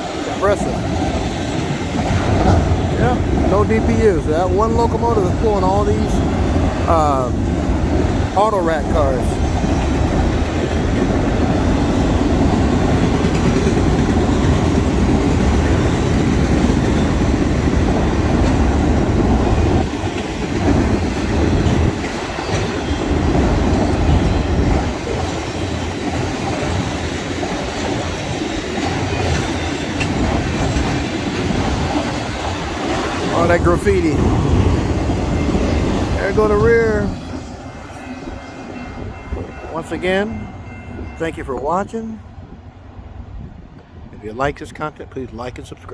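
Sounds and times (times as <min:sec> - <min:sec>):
train wheels rumbling on rails: 0:00.0 - 0:45.9.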